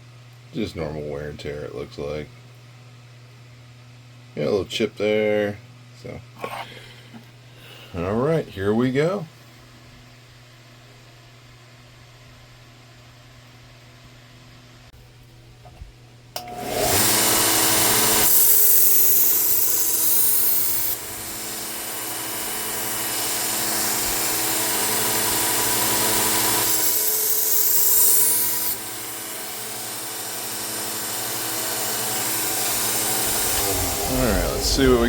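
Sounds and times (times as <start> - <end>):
belt sander running: 16.4 - 35.0.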